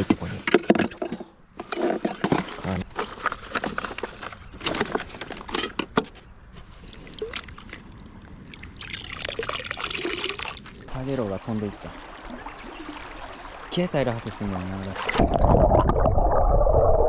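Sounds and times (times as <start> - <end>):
water sloshing and trickling: 0.1 - 16.0
water splashing: 6.6 - 16.8.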